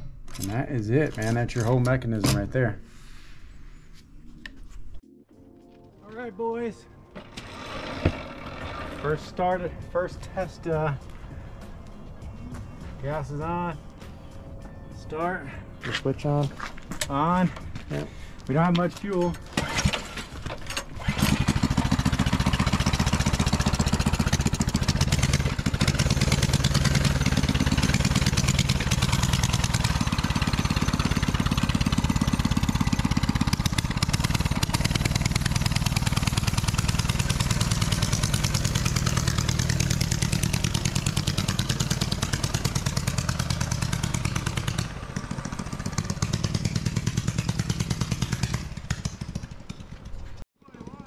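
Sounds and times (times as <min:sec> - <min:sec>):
small engine running: 0:07.1 - 0:09.7, 0:20.8 - 0:51.0.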